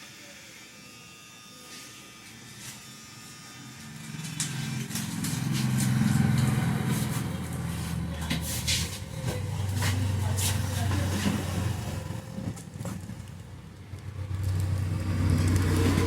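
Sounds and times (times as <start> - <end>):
vehicle engine running: 4.0 - 16.0.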